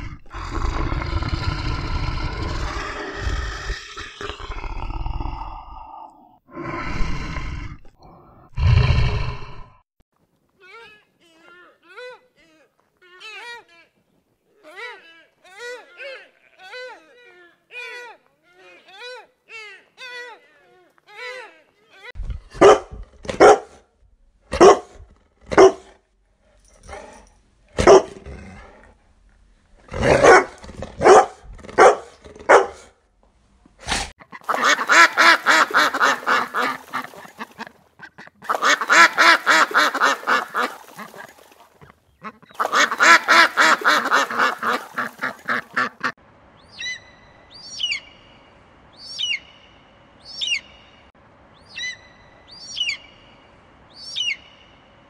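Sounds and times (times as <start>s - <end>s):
sharp animal calls: 34.2s - 46.1s.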